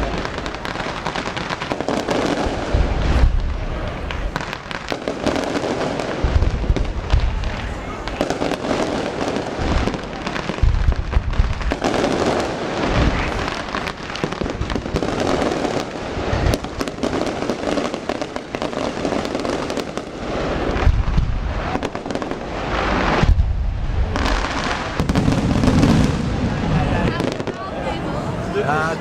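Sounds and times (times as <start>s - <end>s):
deep booms of firework shells: 0.0s - 27.6s
fireworks crackling and popping: 0.0s - 29.0s.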